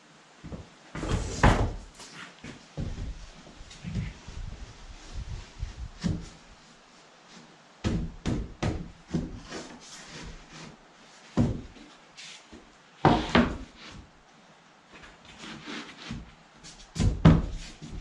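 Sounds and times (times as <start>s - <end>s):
wooden board knocking and scraping: 13.0s - 13.8s.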